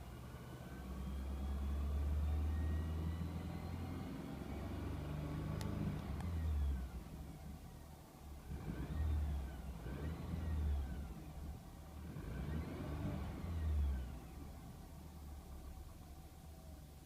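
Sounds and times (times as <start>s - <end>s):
car engine revving: 8.4s - 14.7s.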